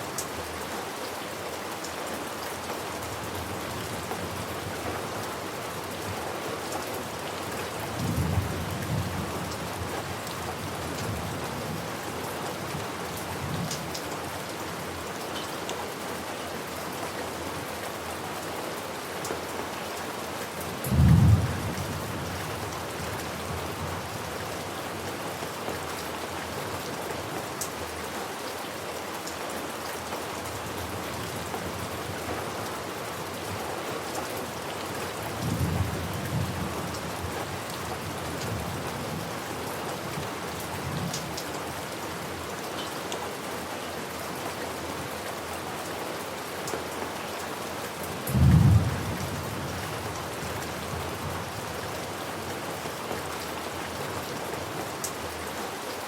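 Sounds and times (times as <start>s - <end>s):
heavy rain: 0.0s - 56.0s
thunder rumbling: 48.3s - 49.8s.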